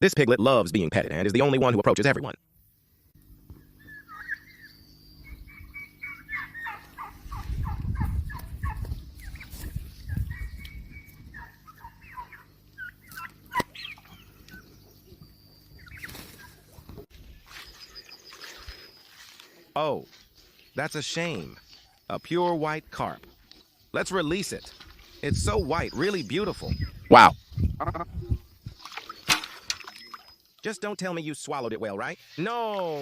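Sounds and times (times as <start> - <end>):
farm fowl calling: 3.5 - 19.7, 20.8 - 28.4.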